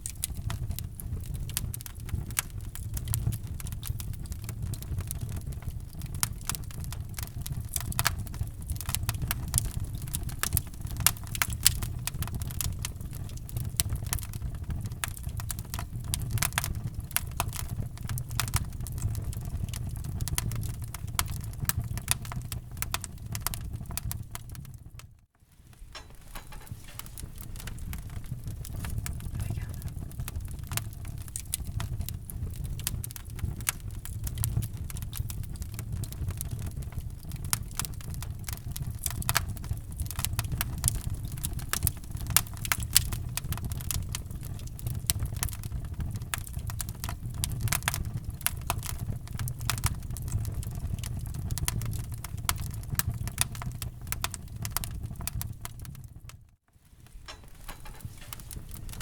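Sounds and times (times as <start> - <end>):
low rumble of flames: 0.0 - 59.0
wood fire crackling and popping: 0.0 - 59.0.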